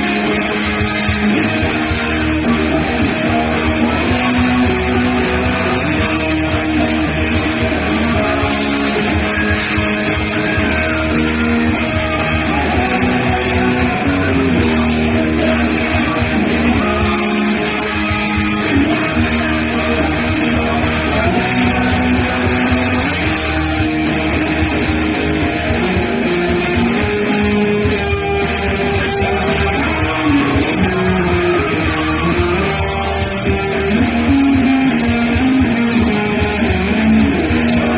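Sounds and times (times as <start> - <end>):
rock guitar melody: 0.0 - 37.9
steady low bass: 0.0 - 37.9.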